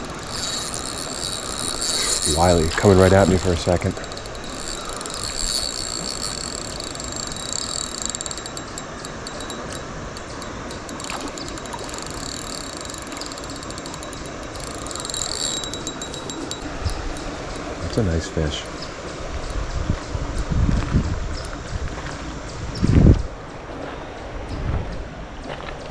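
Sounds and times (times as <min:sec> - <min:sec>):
fishing reel ratcheting: 0:00.0 - 0:20.5.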